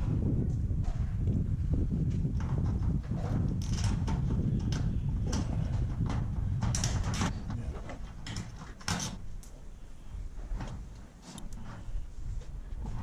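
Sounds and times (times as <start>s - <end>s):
low rumble: 0.0s - 8.3s
metal clicks knocks and scrapes: 2.3s - 9.2s.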